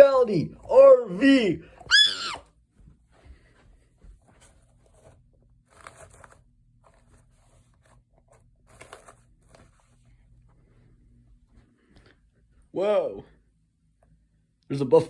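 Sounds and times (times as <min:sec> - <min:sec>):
rustling and scraping of handling: 0:02.7 - 0:12.7.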